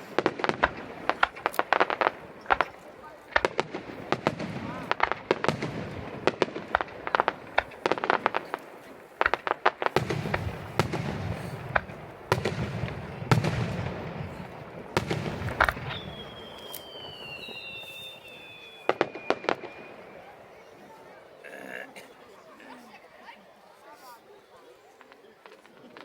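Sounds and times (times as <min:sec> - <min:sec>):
fireworks cracks and bangs: 0:00.0 - 0:20.8
descending firework whistle: 0:15.3 - 0:20.6.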